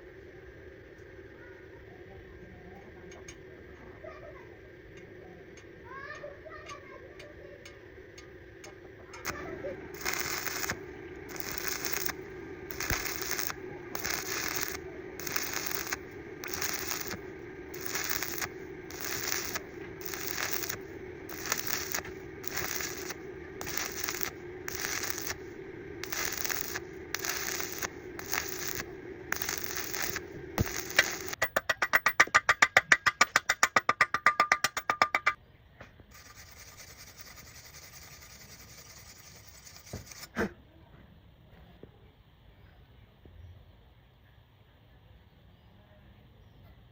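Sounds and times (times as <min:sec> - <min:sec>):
faint steady hiss: 0:00.0 - 0:31.4
steady low hum: 0:00.0 - 0:46.9
rapid loud clicking: 0:07.6 - 0:35.4
rhythmic scraping strokes: 0:09.0 - 0:31.5, 0:36.1 - 0:40.3.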